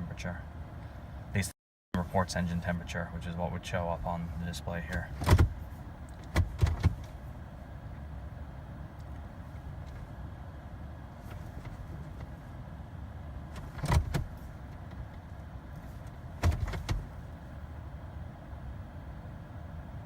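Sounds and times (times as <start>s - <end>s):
low steady rumble: 0.0s - 20.0s
sharp mechanical clunks: 16.4s - 17.1s.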